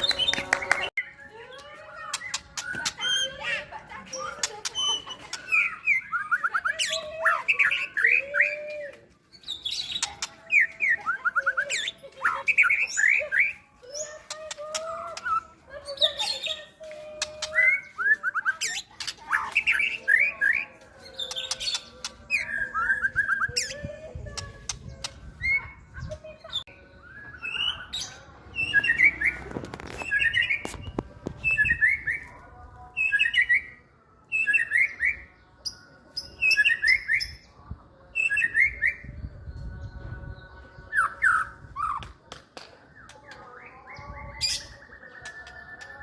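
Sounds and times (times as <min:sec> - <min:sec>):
bird singing varied song: 0:00.0 - 0:46.0.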